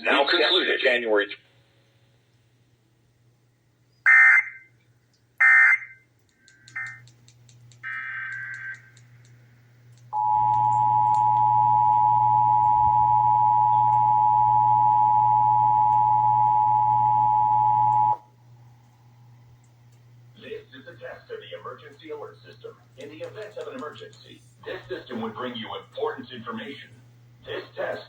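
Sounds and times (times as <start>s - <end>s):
low hum: 6.6s - 22.0s
two-tone attention signal: 10.2s - 18.2s.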